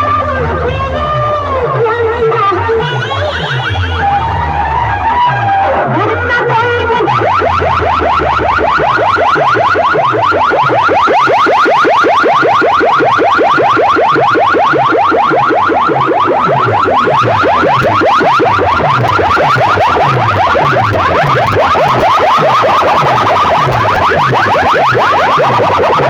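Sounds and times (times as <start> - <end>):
rising electronic siren whoops: 0.0 - 26.0
low bass pulse: 16.1 - 26.0.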